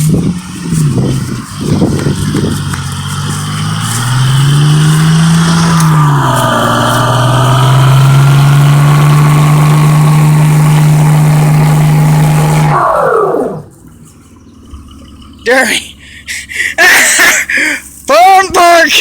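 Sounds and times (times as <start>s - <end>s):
truck engine revving: 0.0s - 19.0s.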